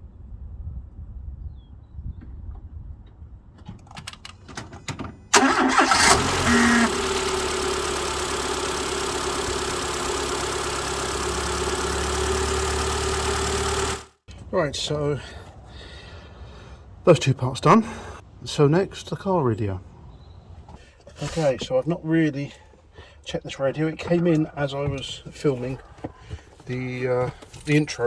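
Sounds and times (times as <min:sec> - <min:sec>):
car engine cranking and idling: 0:05.3 - 0:14.5, 0:20.7 - 0:28.0.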